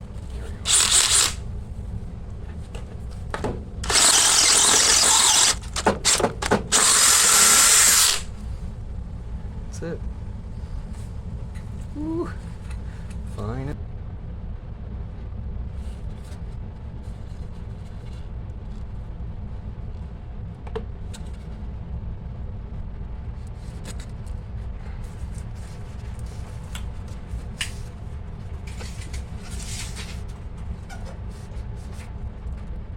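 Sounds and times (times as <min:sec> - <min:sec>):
drill reaming pipe: 0:00.5 - 0:01.4, 0:03.8 - 0:08.4.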